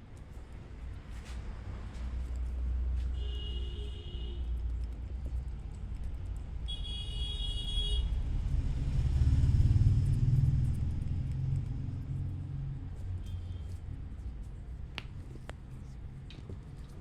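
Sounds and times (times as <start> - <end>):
road traffic rumble: 0.0 - 17.0
vehicle horn honks: 3.1 - 4.4, 6.7 - 8.1.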